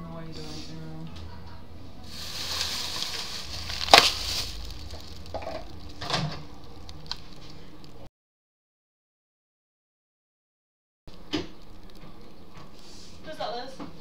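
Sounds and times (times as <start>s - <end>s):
steady room hiss: 0.0s - 8.1s, 11.1s - 14.0s
kitchen items clattering: 2.1s - 7.6s.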